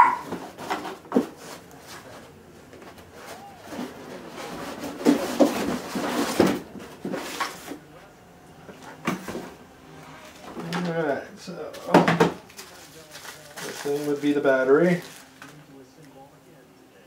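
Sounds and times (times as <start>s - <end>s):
packaging rustling: 11.7s - 15.6s
parts knocking on a table: 11.8s - 12.4s.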